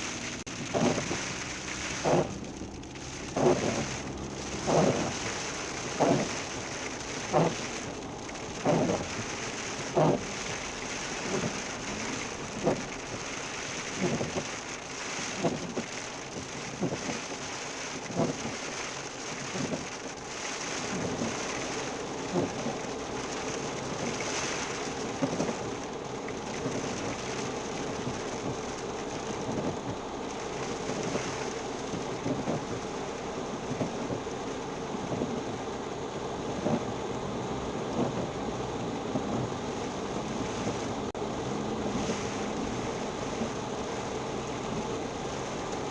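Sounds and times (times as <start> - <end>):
hail and rain pelting down: 0.0 - 45.9
hailstones knocking on hard surface: 0.1 - 17.4.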